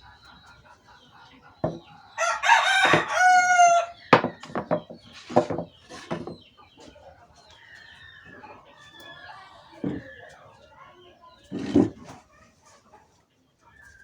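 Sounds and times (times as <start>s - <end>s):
rooster crowing: 2.2s - 4.0s
sharp knocks: 4.2s - 6.3s.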